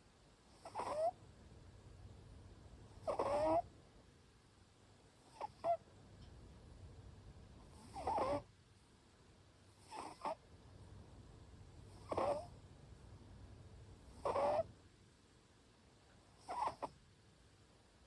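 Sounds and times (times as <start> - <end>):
cat snoring with whistling note: 0.5 - 1.2, 3.0 - 3.7, 5.2 - 5.8, 7.6 - 8.5, 9.7 - 10.4, 11.8 - 12.5, 14.0 - 14.7, 16.3 - 17.0.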